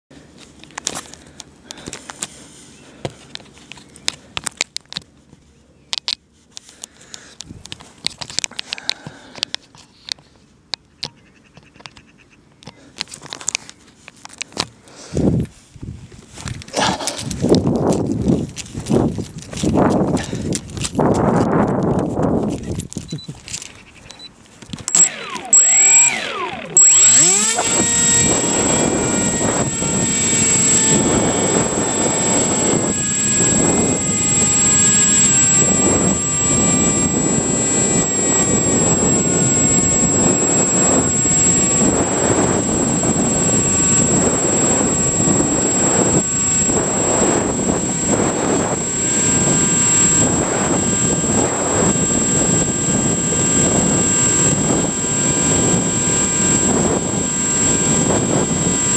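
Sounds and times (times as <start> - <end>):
electric motor propeller whine: 24.8 - 58.9
thin high-pitched tone: 24.9 - 58.9.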